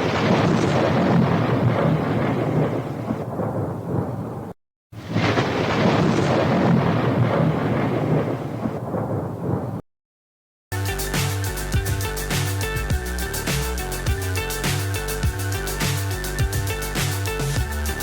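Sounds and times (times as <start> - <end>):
thunder-like rumbling: 0.0 - 9.8.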